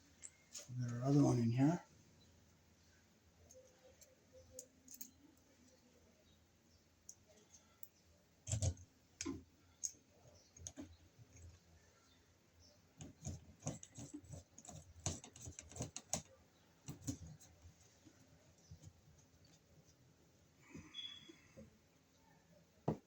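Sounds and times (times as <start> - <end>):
clicks and taps of handling wires: 7.8 - 11.6.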